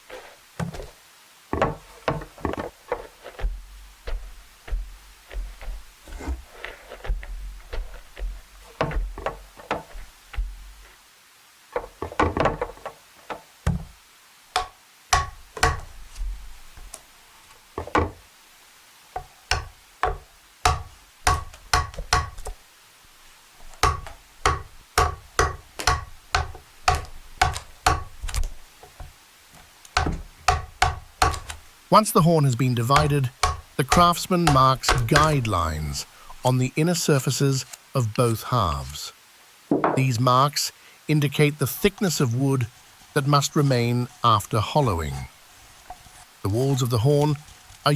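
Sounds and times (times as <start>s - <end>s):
hand tool knocking on wood: 1.5s - 10.9s, 11.8s - 13.9s, 14.6s - 15.9s, 17.8s - 18.2s, 19.2s - 22.6s, 23.8s - 28.2s, 30.0s - 31.5s, 32.8s - 35.5s.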